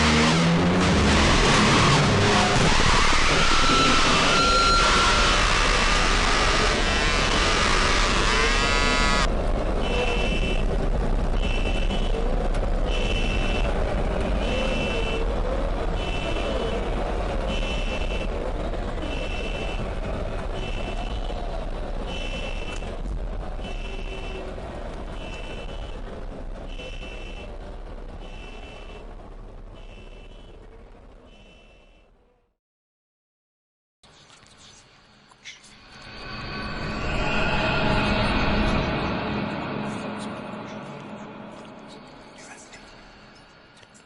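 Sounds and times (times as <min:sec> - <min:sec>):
noisy burst with rising tones: 0:00.0 - 0:11.5, 0:35.8 - 0:43.8
urban rumble: 0:00.0 - 0:32.5, 0:34.0 - 0:44.0
electronic alarm beeping: 0:03.3 - 0:05.4.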